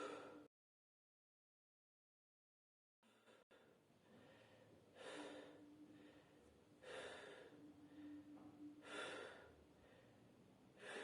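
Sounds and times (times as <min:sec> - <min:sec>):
person breathing deeply: 0:00.0 - 0:00.5, 0:03.1 - 0:11.0.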